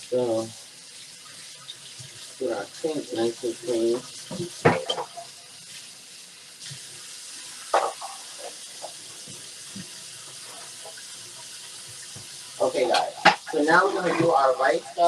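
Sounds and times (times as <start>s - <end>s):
tap running into sink: 4.2s - 5.2s, 7.7s - 10.0s.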